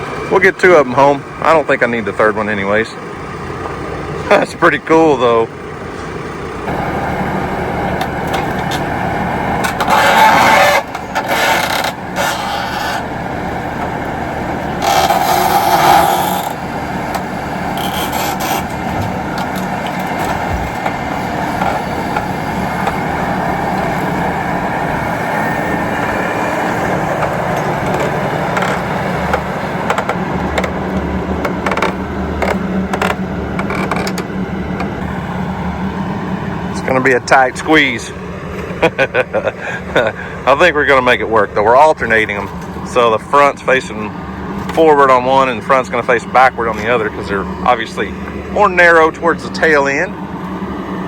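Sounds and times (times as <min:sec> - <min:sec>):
engine running: 0:00.0 - 0:51.0
loud scrapes: 0:09.6 - 0:13.2, 0:14.6 - 0:24.2.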